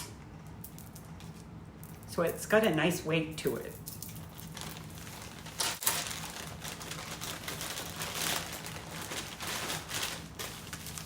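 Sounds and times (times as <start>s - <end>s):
faint steady hum: 0.0s - 11.0s
plastic packaging crinkling: 3.9s - 11.0s.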